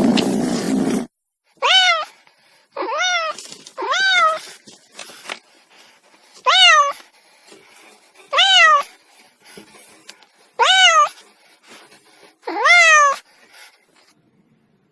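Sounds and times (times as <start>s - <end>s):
cat meowing: 1.6s - 2.2s, 2.8s - 4.5s, 6.4s - 7.0s, 8.3s - 8.9s, 10.6s - 11.2s, 12.4s - 13.2s.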